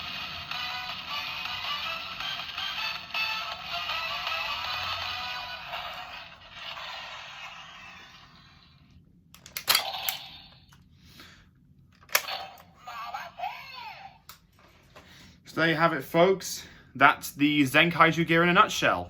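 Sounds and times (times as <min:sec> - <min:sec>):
electronic music from toy speaker: 0:00.0 - 0:08.7.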